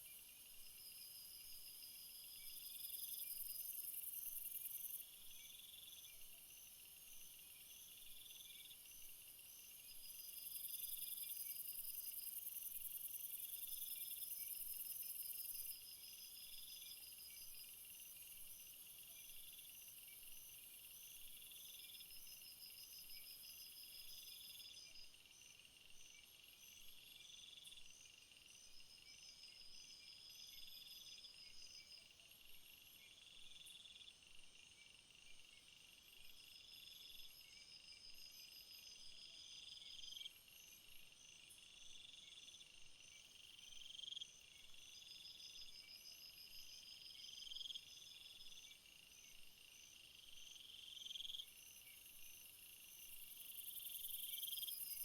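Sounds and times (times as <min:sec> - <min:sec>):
insect song: 0:00.0 - 0:55.0
pulsed cricket chirping: 0:07.7 - 0:55.0.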